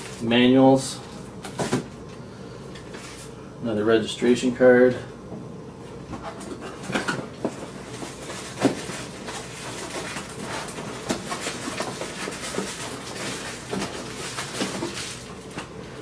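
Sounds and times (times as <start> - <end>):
packaging rustling: 6.9 - 16.0.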